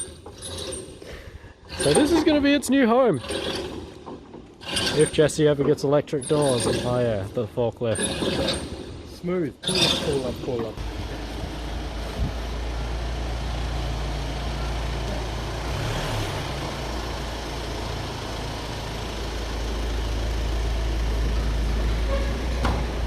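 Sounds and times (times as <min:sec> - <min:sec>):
vehicle engine running at low revs: 0:10.8 - 0:23.0.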